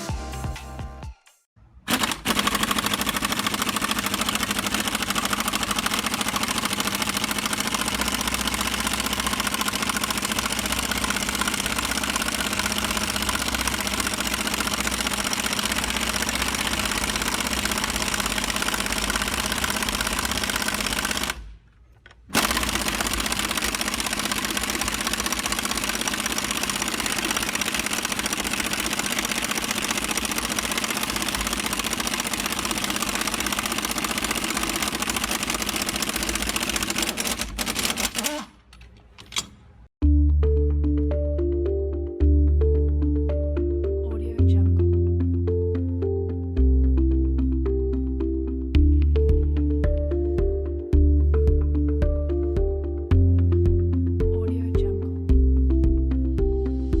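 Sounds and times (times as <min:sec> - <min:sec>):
machine rattling: 0:01.9 - 0:39.8.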